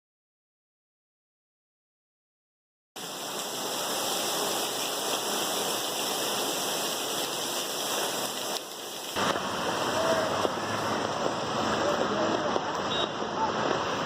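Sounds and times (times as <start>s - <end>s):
heavy rain hissing: 3.0s - 14.0s.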